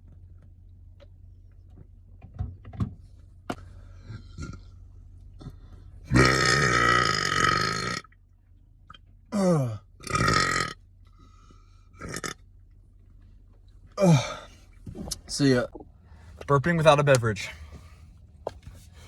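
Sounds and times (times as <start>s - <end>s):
man burping: 6.1s - 8.0s, 9.3s - 10.8s, 12.0s - 12.4s, 14.0s - 14.5s.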